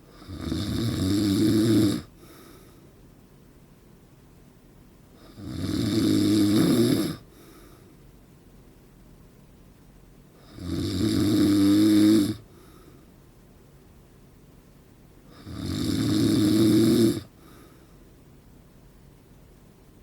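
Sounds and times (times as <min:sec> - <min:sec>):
man snoring loudly: 0:00.1 - 0:02.1, 0:05.2 - 0:07.2, 0:10.4 - 0:12.4, 0:15.3 - 0:17.3
quiet breathing: 0:01.5 - 0:03.4, 0:06.8 - 0:08.4, 0:11.8 - 0:13.7, 0:15.2 - 0:18.3.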